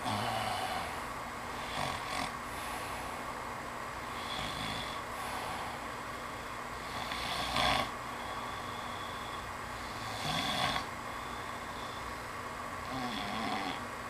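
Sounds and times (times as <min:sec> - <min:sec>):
man snoring: 0:00.0 - 0:01.0, 0:01.6 - 0:03.0, 0:04.2 - 0:05.8, 0:06.8 - 0:12.0, 0:12.8 - 0:13.9.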